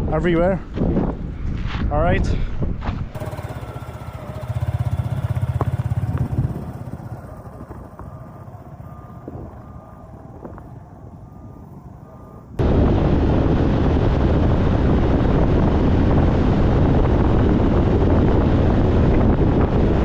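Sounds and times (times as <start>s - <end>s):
wind buffeting microphone: 0.0s - 20.0s
faint repeated beeping: 4.6s - 12.6s.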